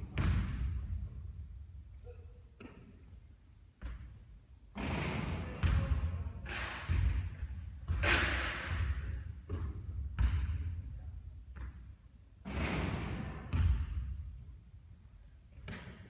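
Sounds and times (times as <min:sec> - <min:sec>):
basketball bouncing: 0:00.1 - 0:00.9, 0:06.9 - 0:10.7, 0:13.5 - 0:14.0.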